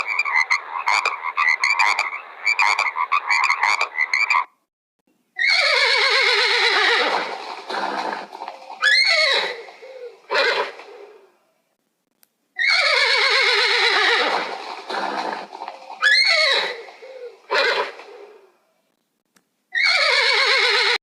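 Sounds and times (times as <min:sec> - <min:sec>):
animal calling loudly: 0:05.4 - 0:11.3, 0:12.6 - 0:18.5, 0:19.7 - 0:21.0.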